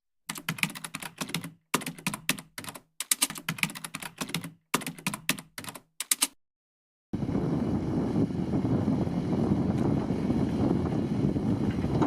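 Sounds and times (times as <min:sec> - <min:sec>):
rapid typing clicks: 0:00.3 - 0:06.4.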